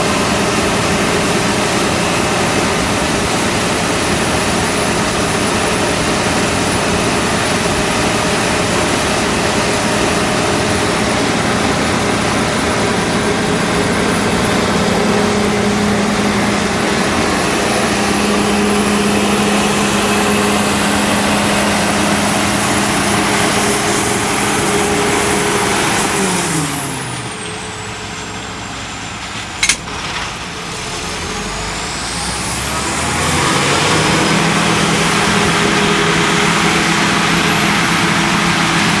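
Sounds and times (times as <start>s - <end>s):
combine harvester running: 0.0s - 39.0s
sharp click: 29.6s - 30.2s.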